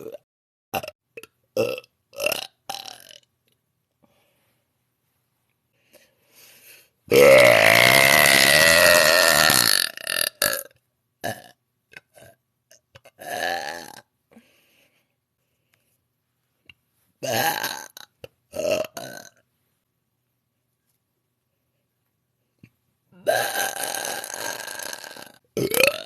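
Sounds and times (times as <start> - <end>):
woman burping: 0.0 - 0.2, 7.1 - 12.4, 23.2 - 26.0.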